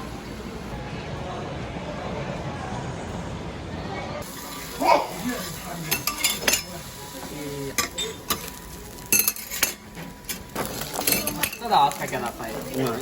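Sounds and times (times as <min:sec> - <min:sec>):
cutlery clinking against dishes: 0:05.9 - 0:06.8, 0:07.8 - 0:08.5, 0:09.1 - 0:12.3.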